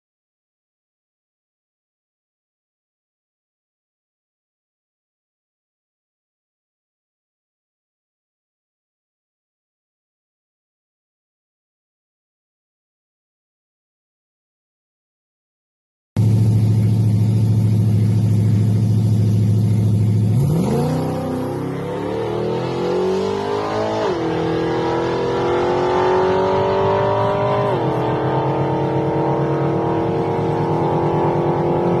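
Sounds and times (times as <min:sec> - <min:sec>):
car engine accelerating: 0:16.2 - 0:32.0.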